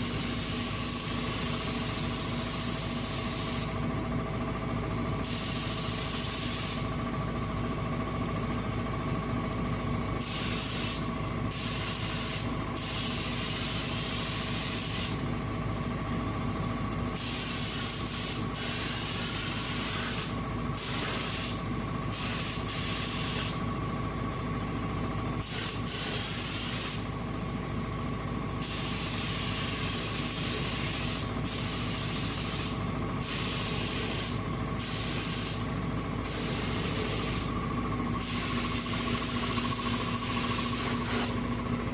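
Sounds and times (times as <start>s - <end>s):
steady machine hum: 0.0s - 41.9s
spray gun hissing: 28.6s - 37.6s, 38.2s - 41.4s.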